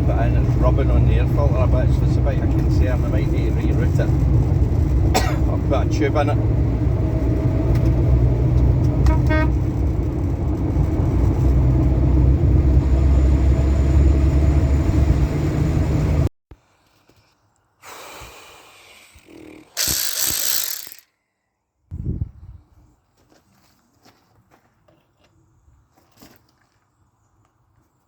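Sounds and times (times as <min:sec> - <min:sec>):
motorcycle engine and wind rumble: 0:00.0 - 0:13.4, 0:21.9 - 0:22.9
short burst of noise: 0:19.8 - 0:21.1.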